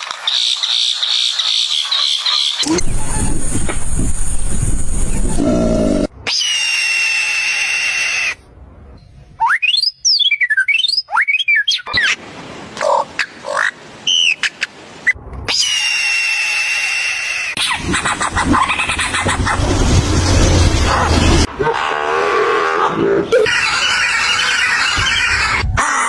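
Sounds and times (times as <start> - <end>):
gliding animal whistles: 0.2 - 8.3, 9.4 - 11.9
long high animal call: 5.0 - 8.4, 15.5 - 17.6.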